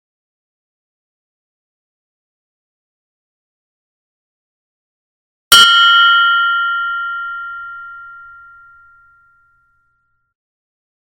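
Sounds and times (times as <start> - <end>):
meditation bell ringing: 5.5 - 10.3.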